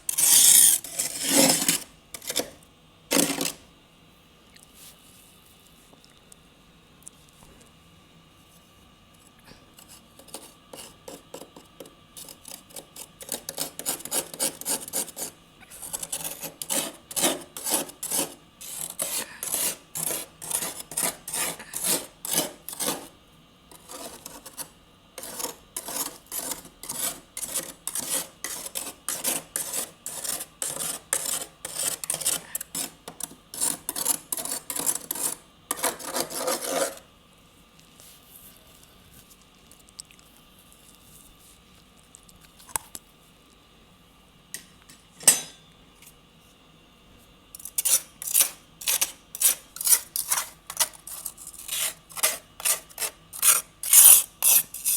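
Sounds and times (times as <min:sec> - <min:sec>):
freezer frost being scraped: 0:00.0 - 0:03.6, 0:09.8 - 0:37.1, 0:47.6 - 0:54.9.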